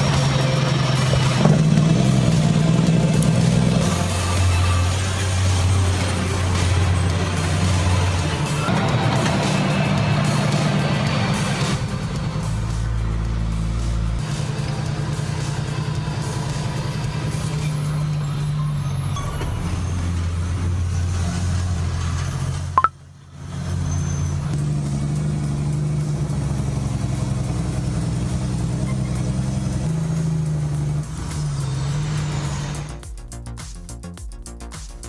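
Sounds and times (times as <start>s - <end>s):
diesel engine running under load: 0.0s - 33.1s.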